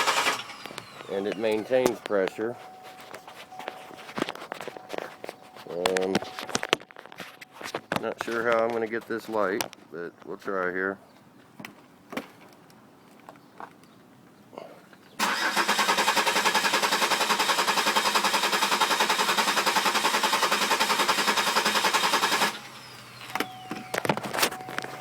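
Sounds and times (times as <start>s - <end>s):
car engine cranking on starter: 0.0s - 3.1s, 15.2s - 25.0s.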